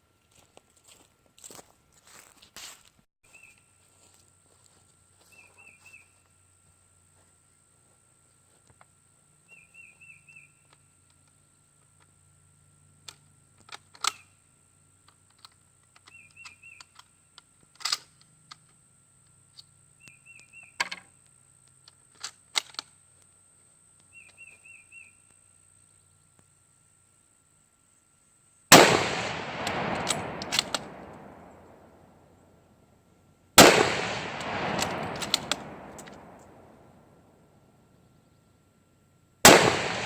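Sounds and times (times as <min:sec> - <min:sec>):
rifle shot with echo: 0:28.7 - 0:32.1, 0:33.6 - 0:36.8, 0:39.4 - 0:40.0.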